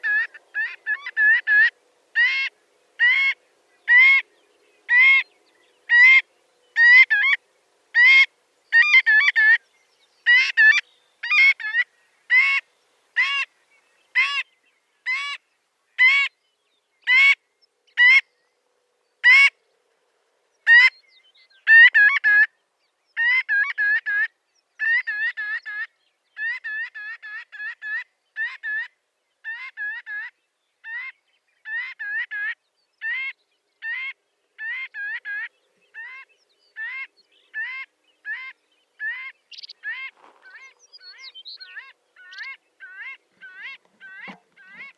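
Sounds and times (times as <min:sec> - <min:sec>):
bird calling: 0:00.0 - 0:07.4, 0:08.0 - 0:14.5, 0:33.0 - 0:44.9.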